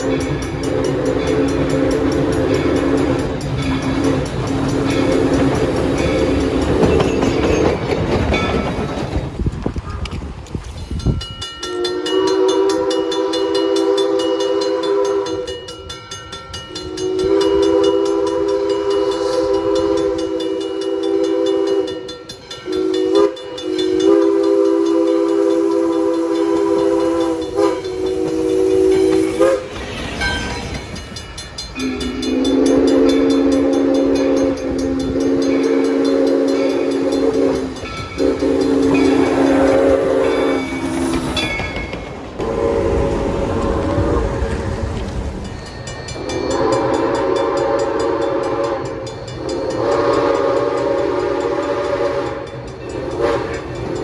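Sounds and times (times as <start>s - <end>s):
locomotive air horn: 0.0s - 3.3s, 11.7s - 15.6s, 16.7s - 29.8s, 31.8s - 41.3s, 42.4s - 44.6s, 46.3s - 54.0s
passing train rumbling: 0.0s - 54.0s.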